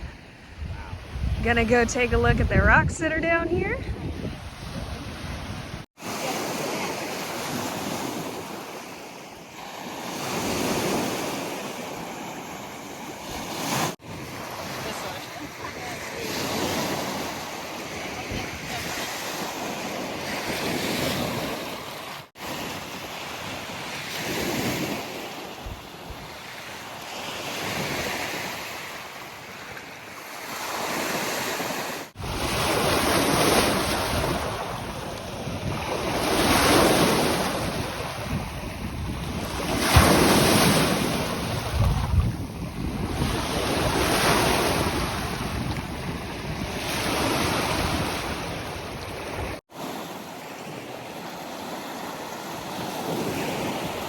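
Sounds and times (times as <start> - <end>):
wind gusting on microphone: 0.0 - 5.9, 13.2 - 21.7, 31.6 - 49.6
waves washing onto beach: 4.0 - 54.0.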